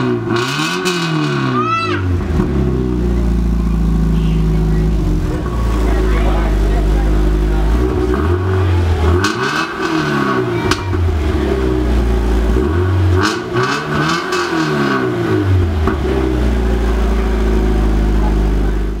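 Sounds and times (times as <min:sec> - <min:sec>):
car engine revving: 0:00.0 - 0:19.0.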